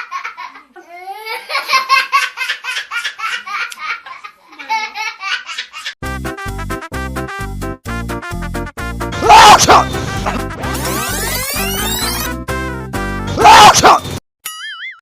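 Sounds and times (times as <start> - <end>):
background music with a beat: 6.0 - 9.2.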